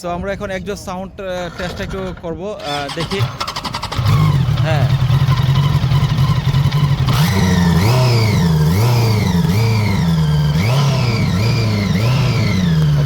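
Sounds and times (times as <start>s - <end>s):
motorcycle engine idling and revving: 2.6s - 13.0s.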